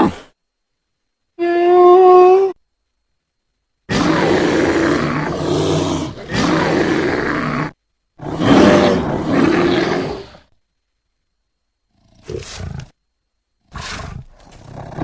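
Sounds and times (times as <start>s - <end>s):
dragon roar: 3.9s - 10.5s.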